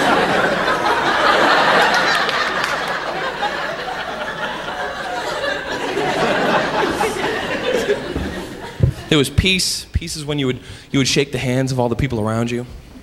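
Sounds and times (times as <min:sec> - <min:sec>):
large audience laughing: 0:00.0 - 0:09.4.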